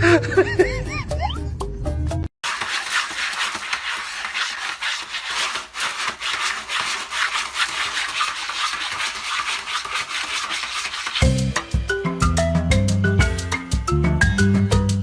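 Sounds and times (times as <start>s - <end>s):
dry scratching strokes: 2.4s - 11.5s.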